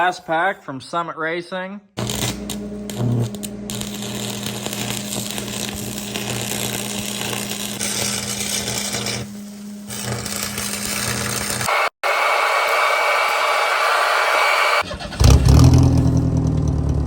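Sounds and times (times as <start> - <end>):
electric power tool running: 2.0 - 14.8.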